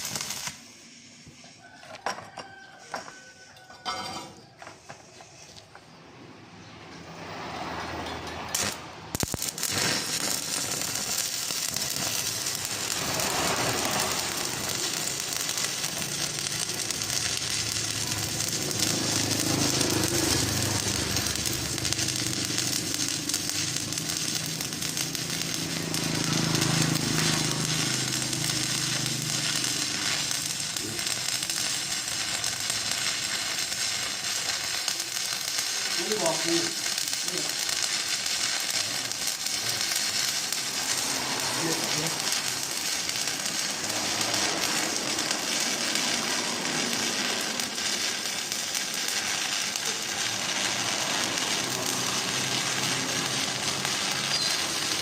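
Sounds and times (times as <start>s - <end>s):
welding arc crackling: 0.0s - 1.4s, 7.2s - 55.0s.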